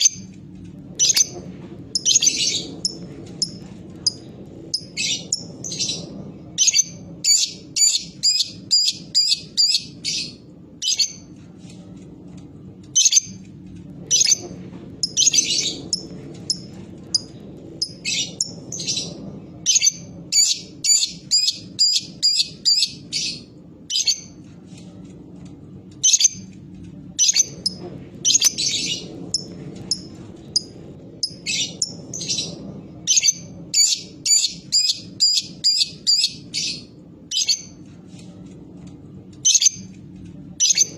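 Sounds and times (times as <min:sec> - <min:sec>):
lovebird chirping: 0:06.6 - 0:11.2, 0:33.1 - 0:37.7.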